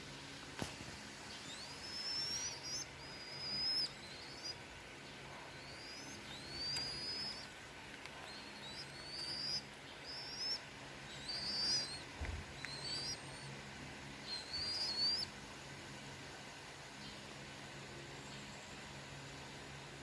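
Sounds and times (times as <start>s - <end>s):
bird chirping: 1.3s - 7.5s, 8.1s - 13.5s, 14.2s - 15.3s.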